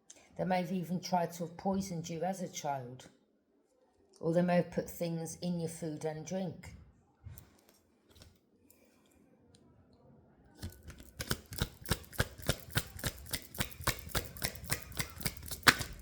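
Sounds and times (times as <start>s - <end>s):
cards being shuffled: 10.6s - 16.0s.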